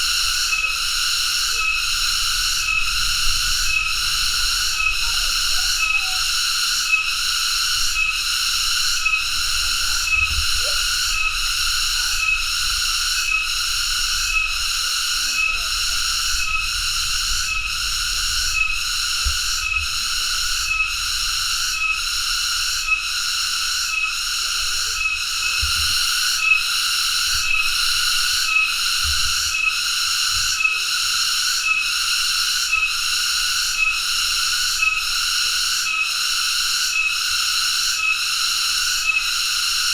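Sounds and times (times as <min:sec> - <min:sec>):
cicada buzzing: 0:00.0 - 0:39.9.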